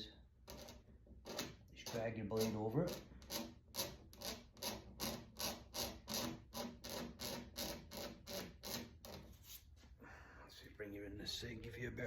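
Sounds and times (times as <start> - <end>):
razor blade scraping: 0.5 - 9.6.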